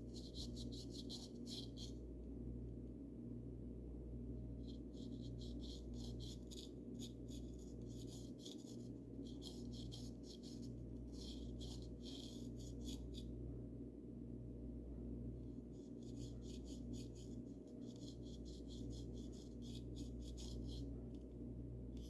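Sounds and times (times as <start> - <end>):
paintbrush bristle strokes: 0.0 - 2.0, 4.7 - 13.2, 15.7 - 20.9
steady low hum: 0.0 - 22.0.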